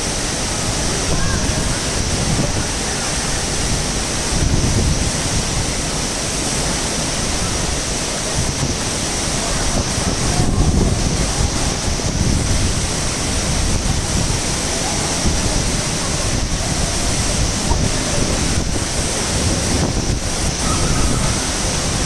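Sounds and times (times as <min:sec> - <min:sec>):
waterfall rushing: 0:00.0 - 0:22.0
wind buffeting the microphone: 0:00.0 - 0:22.0.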